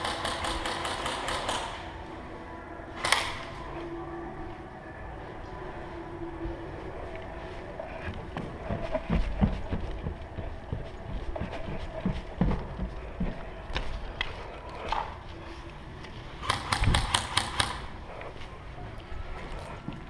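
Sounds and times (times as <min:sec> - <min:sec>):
airsoft gun firing: 0:00.0 - 0:01.9, 0:16.4 - 0:17.9
footsteps and gear thudding: 0:06.4 - 0:15.4.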